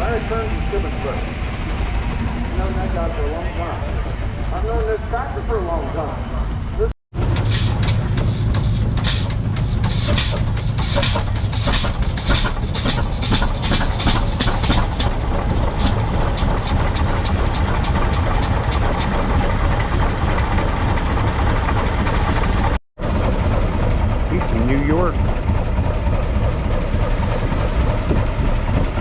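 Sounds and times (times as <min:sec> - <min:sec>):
tractor engine running: 0:07.2 - 0:29.0.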